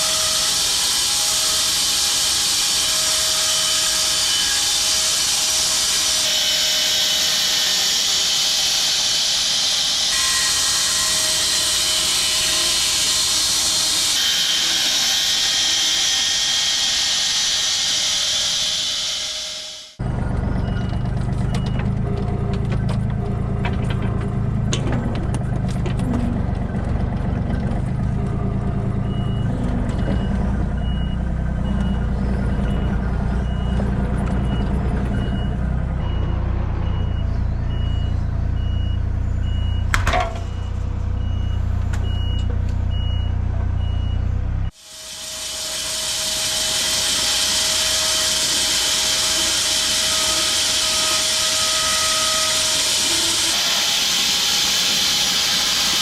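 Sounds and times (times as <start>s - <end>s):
reversing alarm beeping: 18.1s - 23.5s, 28.2s - 44.8s
vehicle engine running: 20.0s - 44.7s
loud steady hiss: 44.8s - 56.0s.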